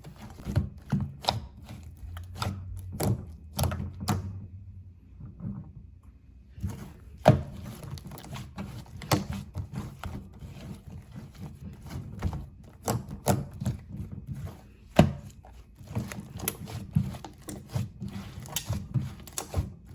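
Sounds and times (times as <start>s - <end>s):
hands squishing slime: 6.6s - 19.9s.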